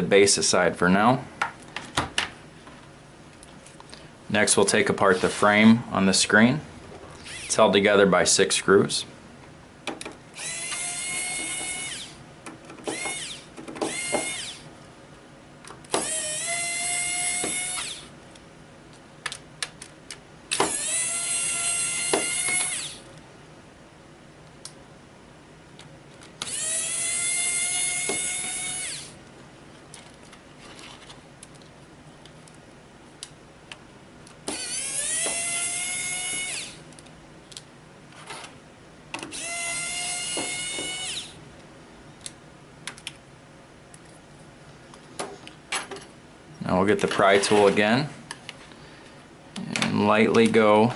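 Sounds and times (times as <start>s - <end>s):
electric screwdriver whine: 7.2s - 7.6s, 10.4s - 12.2s, 12.8s - 14.6s, 15.9s - 18.1s, 20.5s - 23.0s, 26.4s - 29.2s, 34.5s - 36.8s, 39.3s - 41.4s.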